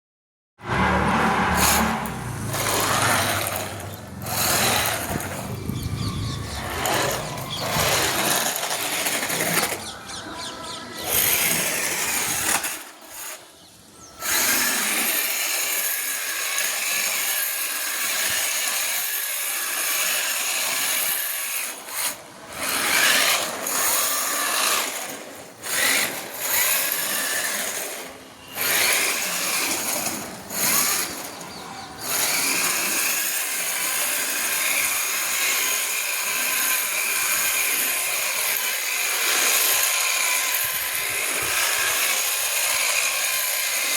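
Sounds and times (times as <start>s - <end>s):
toy car electric motor whining: 0.6s - 43.9s.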